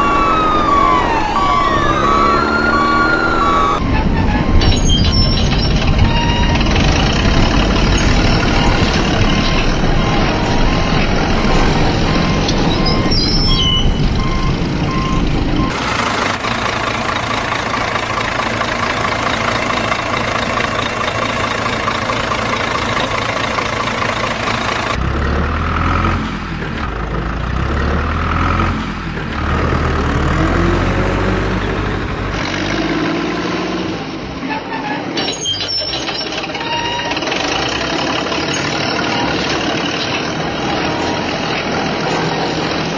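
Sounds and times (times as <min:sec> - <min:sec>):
reversing beeper beeps: 0:00.0 - 0:15.9, 0:35.2 - 0:37.6
heavy truck engine running: 0:00.0 - 0:42.9.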